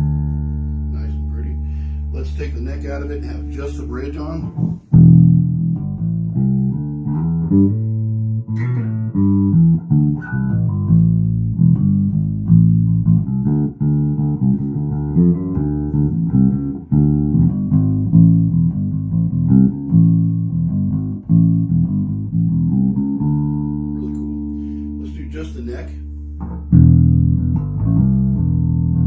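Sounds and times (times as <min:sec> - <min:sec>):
electric bass plucked notes: 0:00.0 - 0:29.0.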